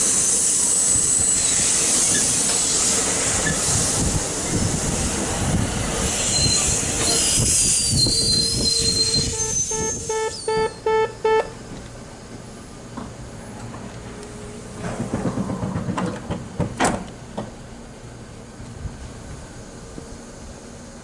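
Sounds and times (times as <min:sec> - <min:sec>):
train wheels squealing on rails: 0:00.0 - 0:10.8
train rumble: 0:00.0 - 0:21.0
pitched beeps: 0:09.3 - 0:11.5.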